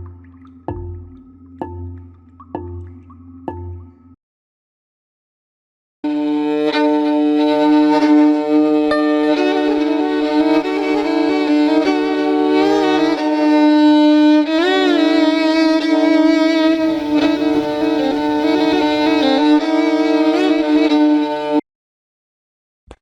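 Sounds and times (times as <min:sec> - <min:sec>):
bowed string melody: 0:00.0 - 0:04.2, 0:06.1 - 0:21.5
sustained drone note: 0:00.0 - 0:04.2, 0:06.1 - 0:13.4, 0:14.5 - 0:20.9.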